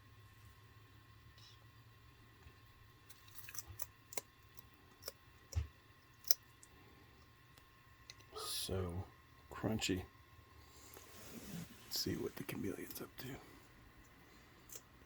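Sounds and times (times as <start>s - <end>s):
lizard crunching insects: 3.0s - 7.4s.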